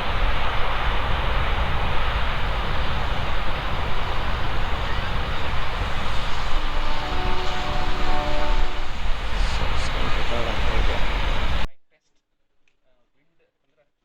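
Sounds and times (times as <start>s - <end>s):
held multi-pitch horn tone: 0.0s - 11.7s
train passing: 0.0s - 11.7s.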